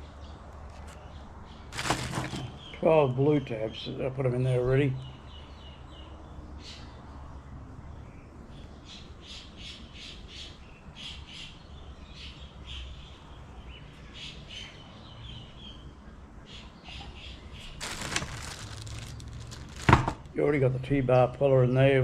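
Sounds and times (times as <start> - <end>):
birds squawking: 17.2 - 19.9.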